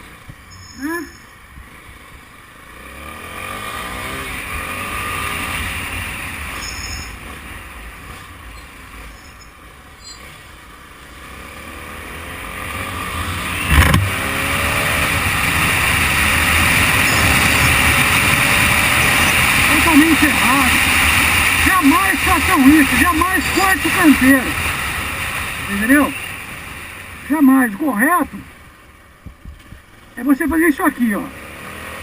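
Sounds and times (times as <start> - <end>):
motorcycle engine accelerating: 0.0 - 28.3, 29.2 - 32.0
sharp thump: 13.7 - 14.2.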